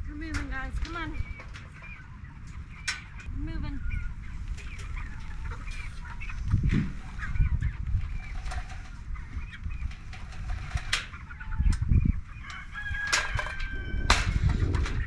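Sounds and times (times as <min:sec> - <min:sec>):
chickens clucking and calling: 0:00.1 - 0:15.0
low rumble: 0:13.5 - 0:15.0.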